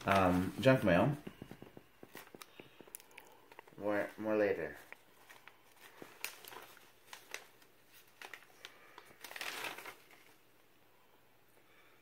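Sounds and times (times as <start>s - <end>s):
paper crinkling: 0.0s - 10.6s
paper rustling: 0.0s - 10.6s.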